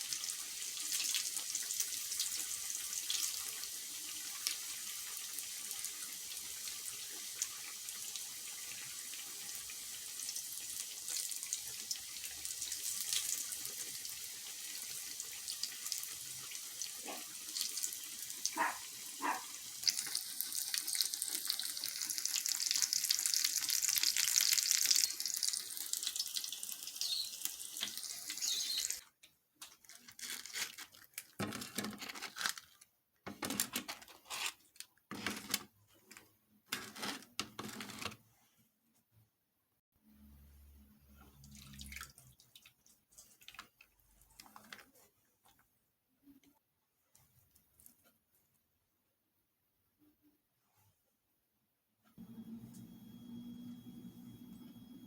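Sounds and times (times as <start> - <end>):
tap water running into sink: 1.0 - 29.0.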